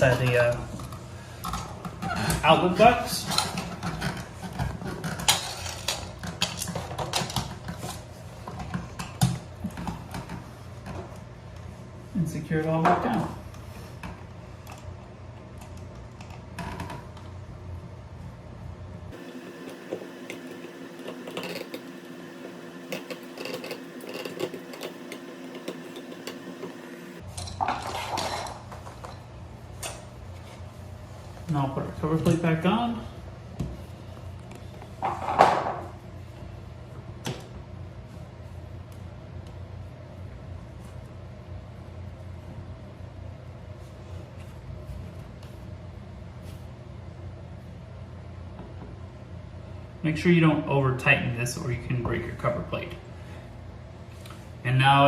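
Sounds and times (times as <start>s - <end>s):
steady low hum: 0.0s - 55.0s
metallic clicks and scrapes: 22.9s - 26.7s.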